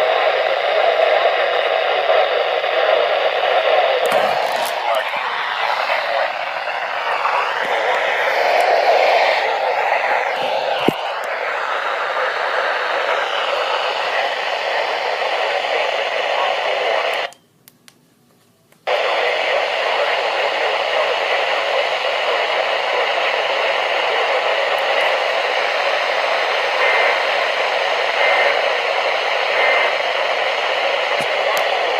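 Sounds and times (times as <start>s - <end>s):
radio static hiss: 0.0s - 17.3s, 18.8s - 31.9s
clicks: 17.0s - 18.8s.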